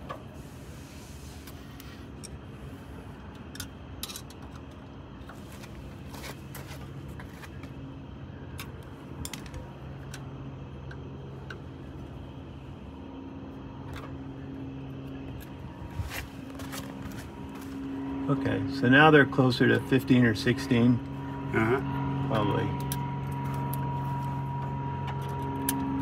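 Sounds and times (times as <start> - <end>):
low hum: 0.0 - 26.0.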